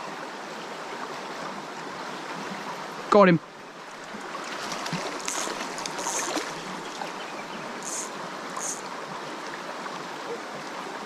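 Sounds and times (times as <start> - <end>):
creek water over rocks: 0.0 - 11.0
brief high hisses: 7.8 - 8.9.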